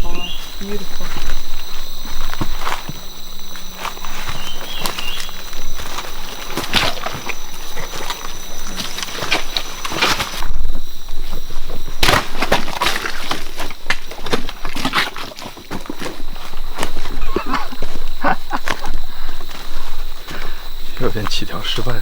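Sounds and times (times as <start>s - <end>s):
leaves and branches rustling: 0.0s - 22.0s
twigs snapping: 1.2s - 10.5s, 11.9s - 19.7s.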